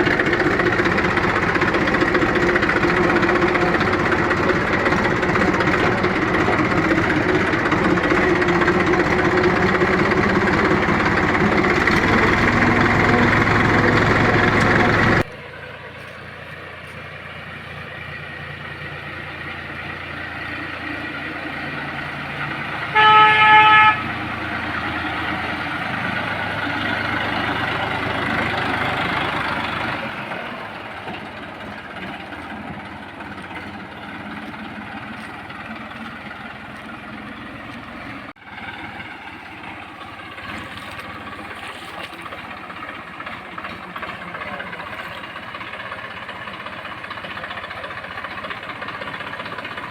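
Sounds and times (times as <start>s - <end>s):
tractor diesel engine under load: 0.0s - 49.9s
horn: 22.9s - 24.2s.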